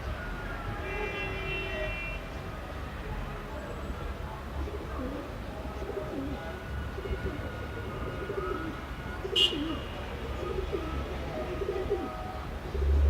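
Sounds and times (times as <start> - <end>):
pigeons cooing: 4.6 - 6.4, 7.0 - 13.0.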